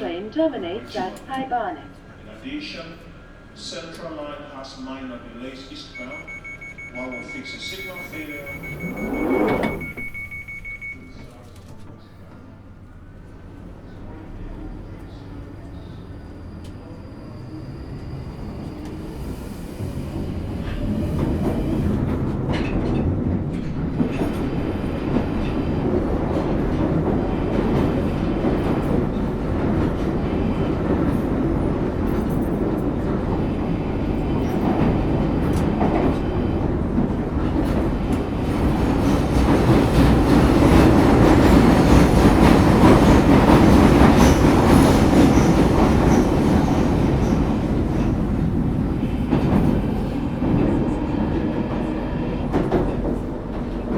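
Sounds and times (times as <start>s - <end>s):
train rumbling in tunnel: 0.0s - 53.9s
wheels clattering on rail: 7.6s - 10.9s, 18.6s - 53.9s.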